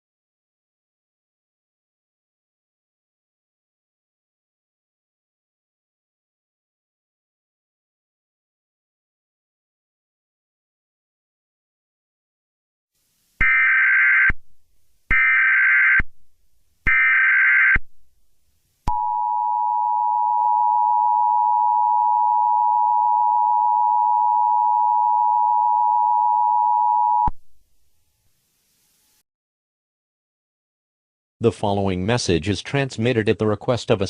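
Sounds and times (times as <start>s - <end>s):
steady two-tone attention signal: 18.9s - 27.3s.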